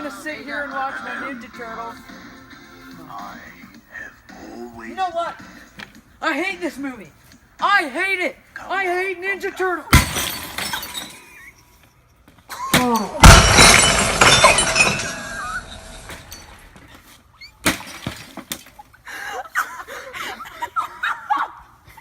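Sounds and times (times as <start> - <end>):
glass shattering: 9.9 - 11.3, 12.7 - 16.8
sledgehammer smashing tv: 12.8 - 16.4.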